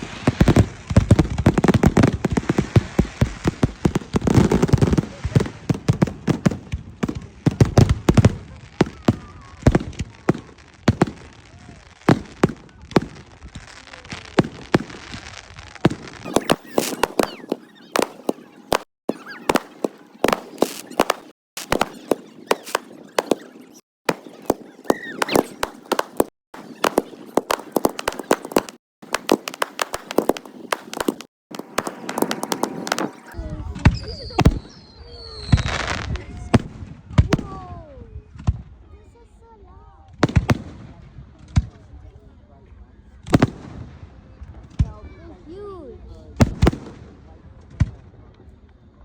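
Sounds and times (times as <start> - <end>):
fireworks crackling: 0.0 - 37.6
fireworks bangs: 0.0 - 37.8, 46.4 - 48.0.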